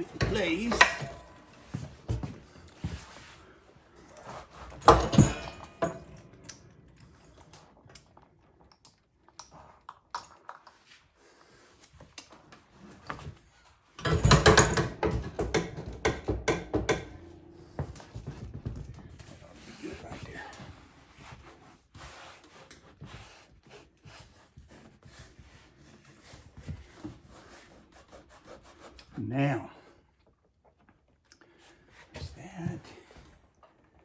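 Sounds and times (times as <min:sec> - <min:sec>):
loud knocking: 0:14.1 - 0:18.4.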